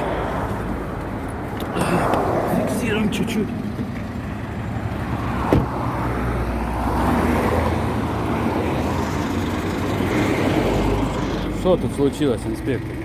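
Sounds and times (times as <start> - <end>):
car engine running: 1.0 - 6.0, 10.8 - 13.0.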